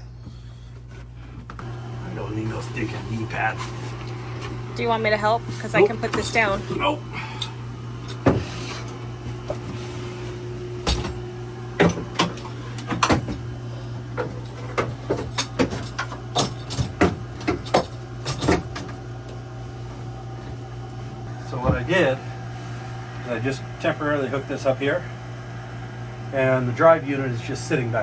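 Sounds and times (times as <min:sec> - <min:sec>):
steady low hum: 0:00.0 - 0:28.0
tools knocking and clattering: 0:14.2 - 0:19.4.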